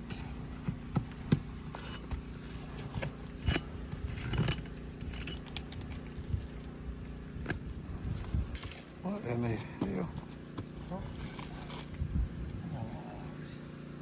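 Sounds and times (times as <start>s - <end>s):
metal tool scraping: 1.7s - 5.7s, 11.0s - 12.0s.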